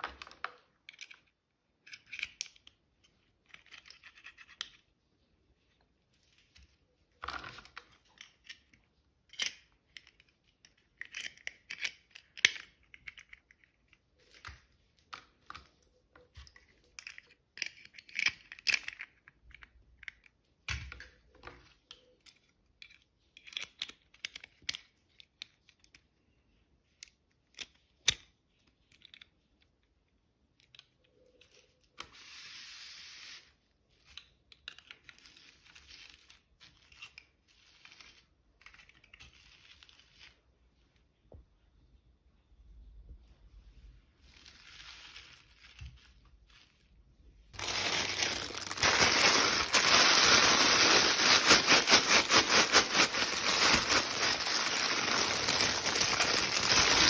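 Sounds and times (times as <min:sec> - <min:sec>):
packaging crinkling and tearing: 0:47.6 - 0:57.0.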